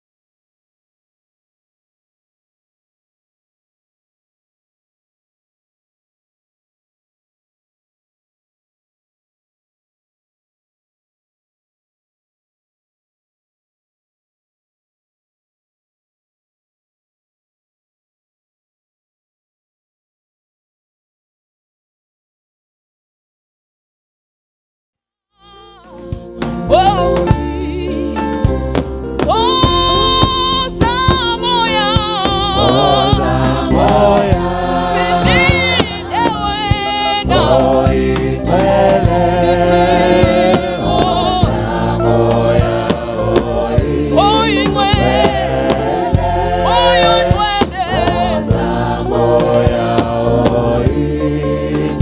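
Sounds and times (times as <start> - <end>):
gospel singing with vibrato: 25.4 - 52.0
keyboard chords: 25.5 - 52.0
steady bass: 25.9 - 52.0.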